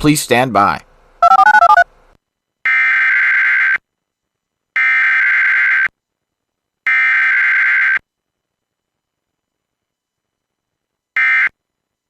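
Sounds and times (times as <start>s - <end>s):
buzzing digital data tones: 1.2s - 1.8s.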